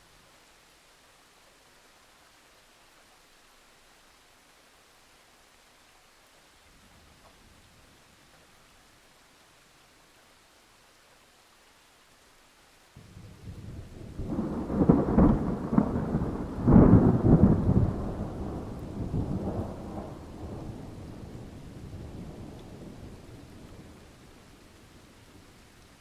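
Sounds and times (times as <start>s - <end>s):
thunder rolling and crashing: 13.5s - 20.7s.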